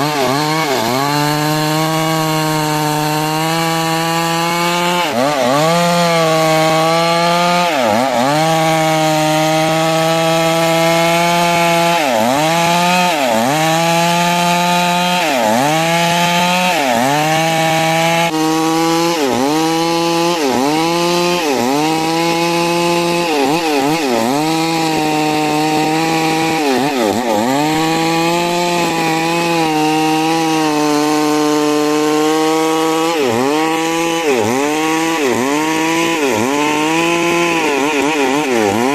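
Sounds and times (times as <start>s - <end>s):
chainsaw cutting log: 0.0s - 38.9s.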